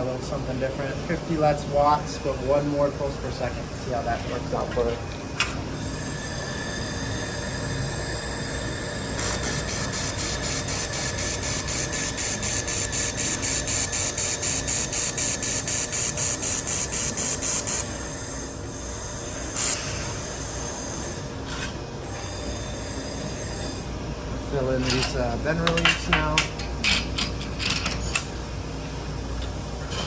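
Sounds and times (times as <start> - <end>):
steady high whine: 5.7 - 26.0
pulsing laser welder hiss: 5.8 - 21.3.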